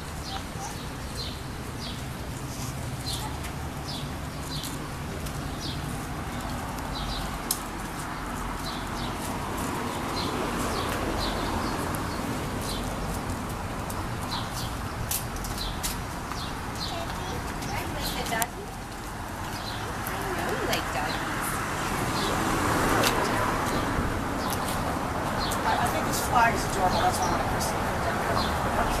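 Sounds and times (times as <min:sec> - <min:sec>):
small birds chirping: 0:00.0 - 0:21.4, 0:23.6 - 0:29.0
outdoor background noise: 0:00.0 - 0:29.0.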